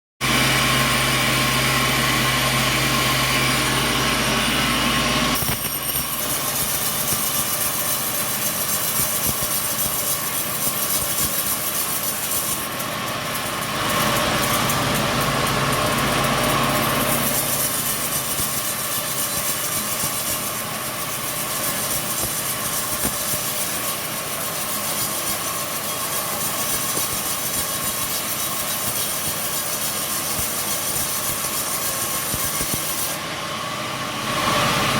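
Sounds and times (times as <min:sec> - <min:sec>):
engine hum: 0:00.2 - 0:25.1, 0:32.6 - 0:34.9
saw machinery whirring: 0:00.2 - 0:34.9.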